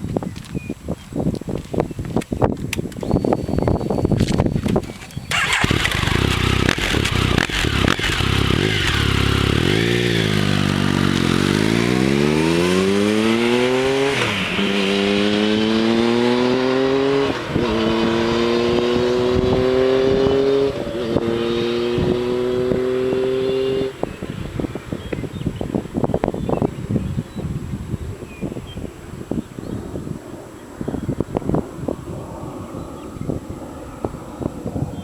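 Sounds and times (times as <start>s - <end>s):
motorcycle engine revving and accelerating: 5.3s - 26.7s.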